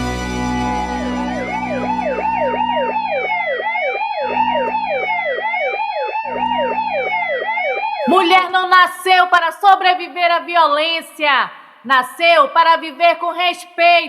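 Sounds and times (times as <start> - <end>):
low hum: 0.0 - 8.0
wailing siren: 0.0 - 8.5
fast yelping police siren: 0.5 - 8.4.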